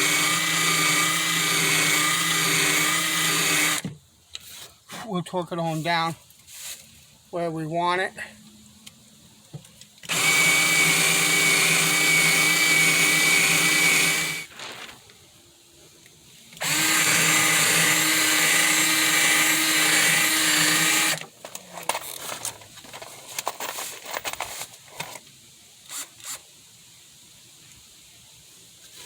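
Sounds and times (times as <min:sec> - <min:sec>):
power drill driving screws into wood: 0:00.0 - 0:03.9, 0:10.0 - 0:14.5, 0:16.6 - 0:21.3, 0:25.9 - 0:26.4.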